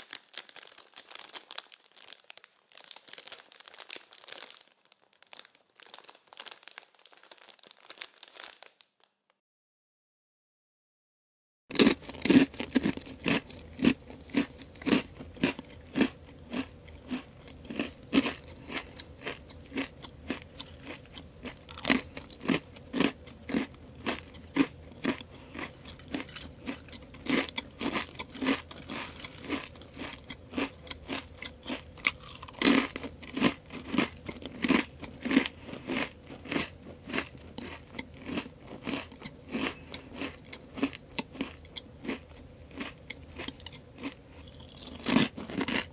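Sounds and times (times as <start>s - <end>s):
potato chips crunching: 0.0s - 9.1s, 11.7s - 45.9s.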